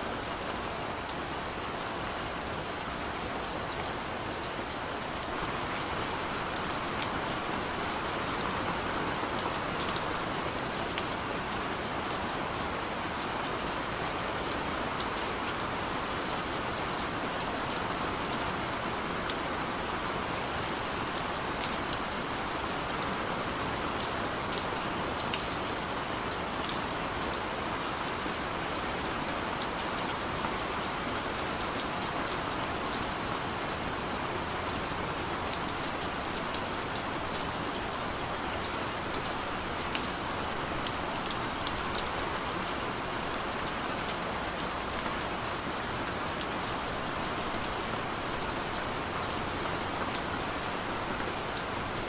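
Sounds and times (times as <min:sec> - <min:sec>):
steady rain hiss: 0:00.0 - 0:52.0.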